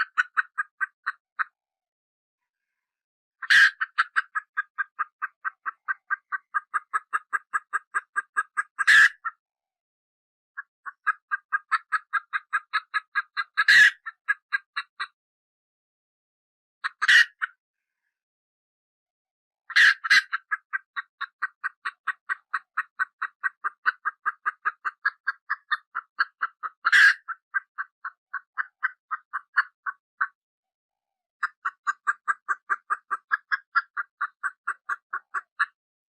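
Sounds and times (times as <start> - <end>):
baby chick peeping: 0.0 - 1.5, 3.4 - 9.4, 10.6 - 15.2, 16.8 - 17.6, 19.7 - 30.4, 31.4 - 35.8.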